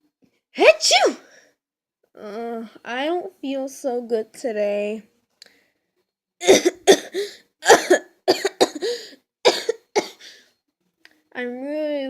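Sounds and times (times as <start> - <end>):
person coughing: 6.4 - 10.4.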